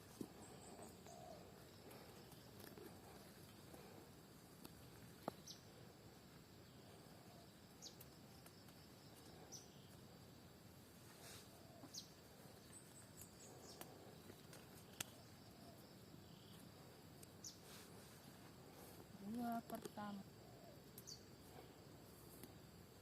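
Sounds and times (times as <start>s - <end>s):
faint insect drone: 0.0s - 23.0s.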